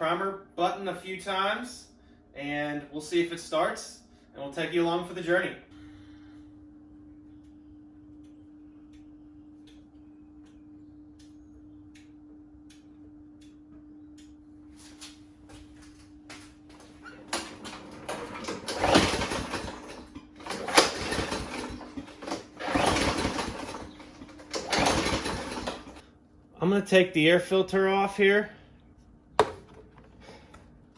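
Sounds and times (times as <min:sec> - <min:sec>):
faint steady hum: 0:00.0 - 0:17.4
soft regular clicks: 0:08.2 - 0:14.4
mower engine pull-start: 0:16.8 - 0:26.1.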